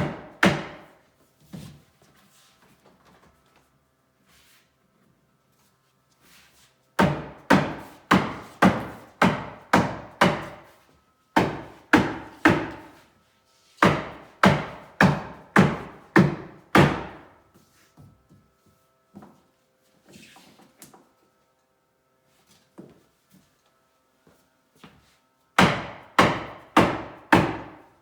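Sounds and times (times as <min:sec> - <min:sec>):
hammer blows on wooden panel: 0:13.8 - 0:17.3, 0:25.6 - 0:27.9.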